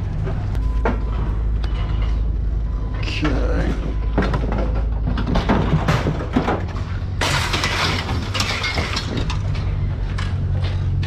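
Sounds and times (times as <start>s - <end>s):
scrap metal crash: 4.1s - 9.7s
scrap metal clanking: 4.1s - 11.0s.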